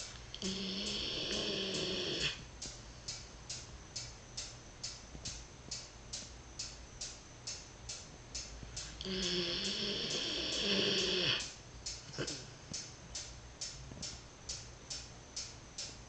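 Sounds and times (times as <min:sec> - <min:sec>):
steady ticking: 0:00.0 - 0:16.0
dog snoring: 0:00.4 - 0:02.4, 0:09.0 - 0:11.5.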